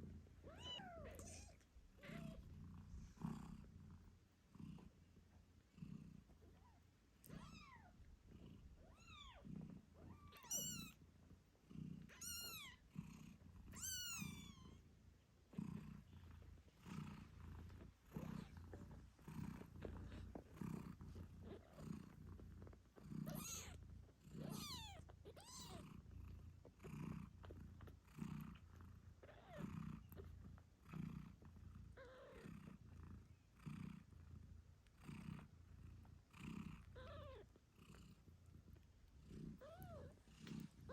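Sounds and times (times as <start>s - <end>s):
cat purring: 0.0s - 40.9s
kittens squeaking: 10.1s - 11.0s, 12.2s - 12.7s, 13.8s - 14.6s, 23.3s - 23.8s, 24.4s - 25.8s.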